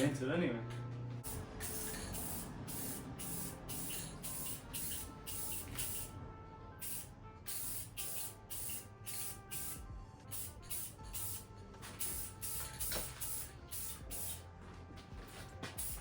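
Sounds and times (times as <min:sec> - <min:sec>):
spray paint hissing: 0:01.2 - 0:06.1, 0:06.8 - 0:14.4, 0:15.7 - 0:16.0.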